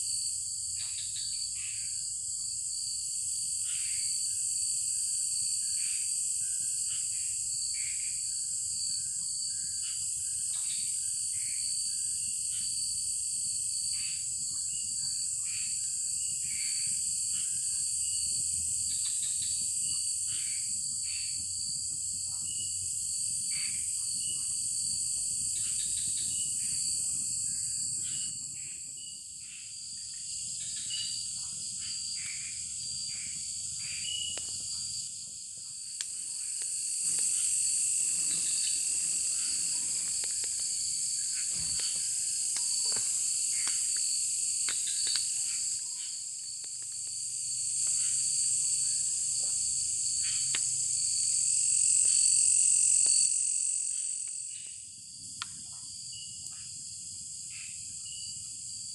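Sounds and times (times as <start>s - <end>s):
high insect drone: 0.0s - 58.9s
frog calls: 0.8s - 2.1s, 3.6s - 4.1s, 6.8s - 8.3s, 13.9s - 17.8s, 23.5s - 24.5s, 31.8s - 34.7s, 35.9s - 46.8s, 47.8s - 51.4s.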